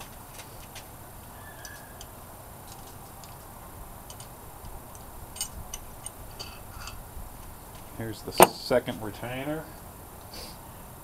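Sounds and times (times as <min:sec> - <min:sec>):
steady low background noise: 0:00.0 - 0:11.0.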